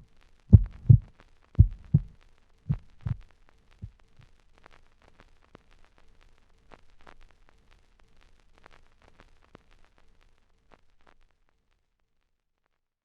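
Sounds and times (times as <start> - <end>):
faint low rumble: 0.0 - 3.2.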